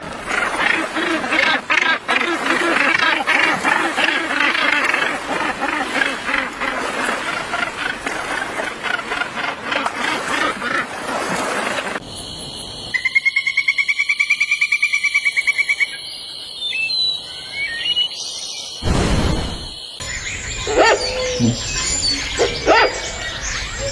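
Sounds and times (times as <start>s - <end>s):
chorus of croaking animal calls: 0.0s - 10.9s, 20.0s - 23.9s.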